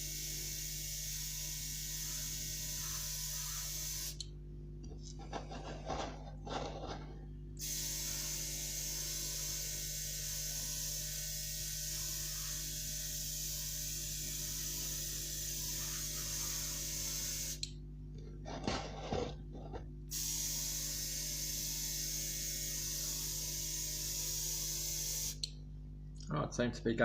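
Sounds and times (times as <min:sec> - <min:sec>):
airbrush air hiss: 0:00.0 - 0:04.2, 0:07.6 - 0:17.6, 0:20.1 - 0:21.1
low electrical hum: 0:00.0 - 0:27.0
short spray bursts: 0:20.1 - 0:20.8.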